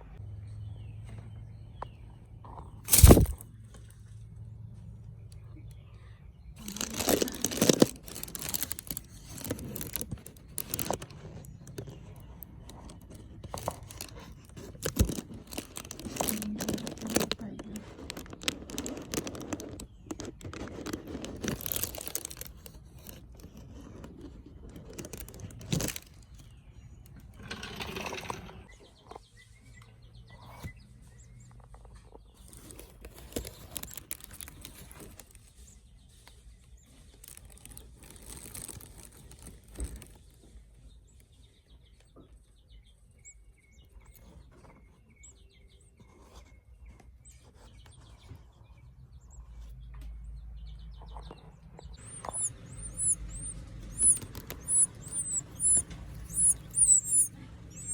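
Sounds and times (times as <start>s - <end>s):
baby birds chirping: 0.6s - 3.4s, 5.2s - 27.3s, 28.7s - 57.9s
rustles and knocks from handling: 2.5s - 3.9s.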